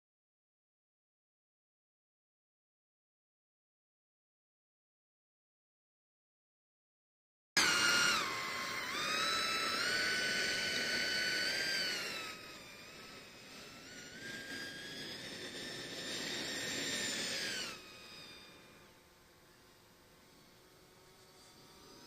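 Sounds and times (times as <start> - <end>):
electric ducted fan whining: 7.6 - 22.0.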